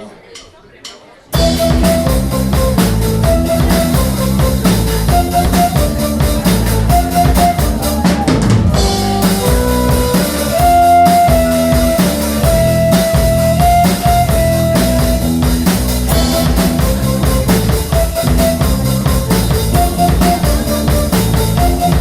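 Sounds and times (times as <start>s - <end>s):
drum kit steady beat: 0.4s - 22.0s
live band instrumental: 1.3s - 22.0s.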